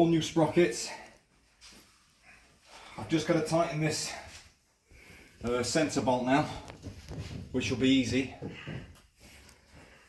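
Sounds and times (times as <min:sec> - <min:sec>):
man speaking: 0:00.0 - 0:01.2, 0:03.0 - 0:04.4, 0:05.4 - 0:06.8, 0:07.5 - 0:08.5
soft breath: 0:04.1 - 0:05.5, 0:08.4 - 0:10.0.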